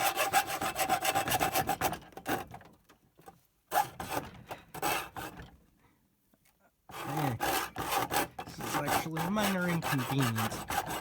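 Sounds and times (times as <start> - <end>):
hand saw cutting plastic: 0.0 - 2.7, 3.7 - 5.5, 6.9 - 11.0.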